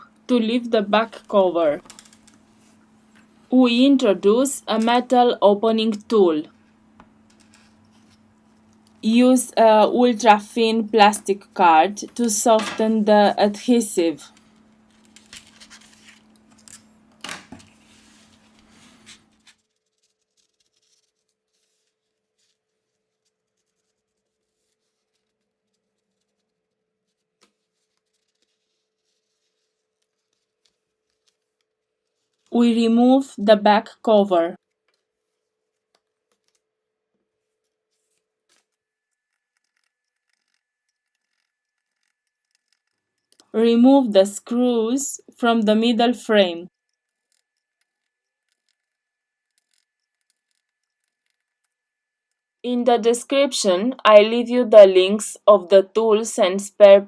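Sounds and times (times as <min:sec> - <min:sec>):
plastic card scraping under cover: 0:14.3 - 0:16.9, 0:37.6 - 0:43.2.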